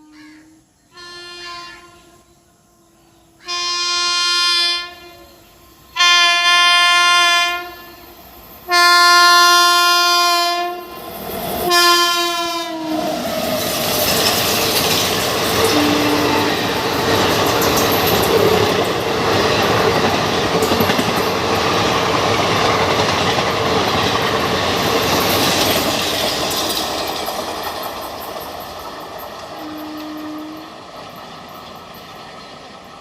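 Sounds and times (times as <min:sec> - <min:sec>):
locomotive air horn blasts: 0:00.0 - 0:02.3, 0:03.4 - 0:05.4, 0:06.0 - 0:08.1, 0:08.7 - 0:11.0, 0:11.6 - 0:13.2, 0:15.6 - 0:17.3, 0:29.6 - 0:30.8
train wheels running over track: 0:04.8 - 0:33.0.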